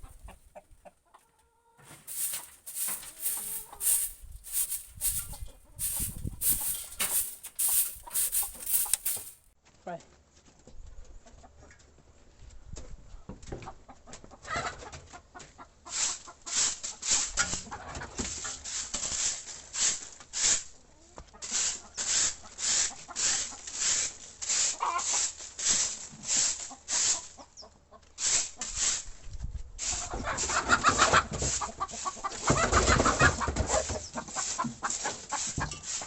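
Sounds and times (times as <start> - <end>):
chickens clucking: 0.0 - 9.3, 30.1 - 35.8.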